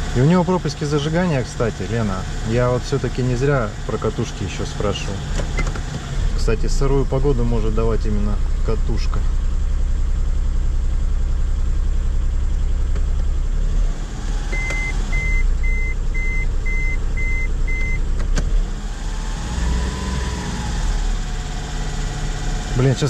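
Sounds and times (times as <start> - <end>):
car engine idling: 0.0 - 23.0
electronic warning beeps: 14.5 - 18.0.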